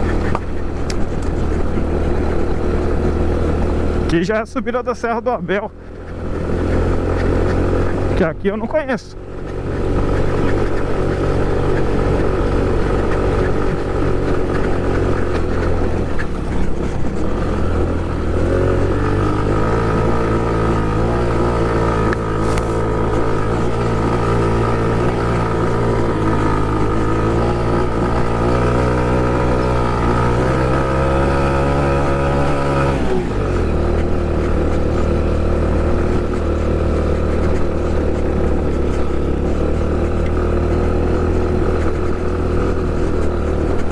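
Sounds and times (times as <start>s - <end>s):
motorcycle engine under load: 0.0s - 43.9s.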